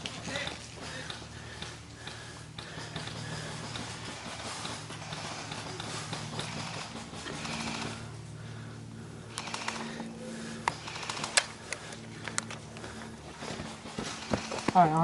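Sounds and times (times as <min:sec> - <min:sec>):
airsoft gunfire: 0:02.6 - 0:08.1, 0:09.3 - 0:10.1, 0:10.7 - 0:11.7, 0:13.5 - 0:15.0.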